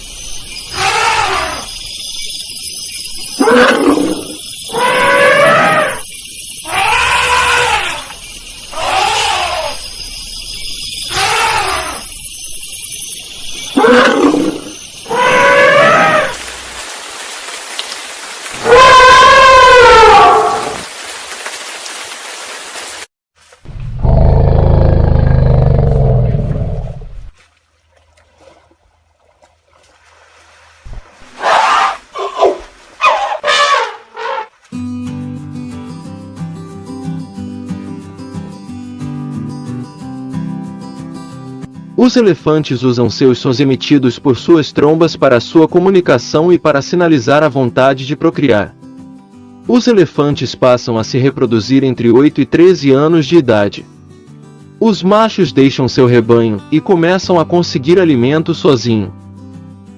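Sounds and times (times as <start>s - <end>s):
elephant trumpeting: 0.7s - 1.7s, 3.4s - 6.0s, 6.7s - 8.1s, 8.7s - 9.8s, 11.1s - 12.0s, 13.8s - 16.4s, 18.6s - 20.8s, 31.4s - 34.5s
music: 34.7s - 59.9s.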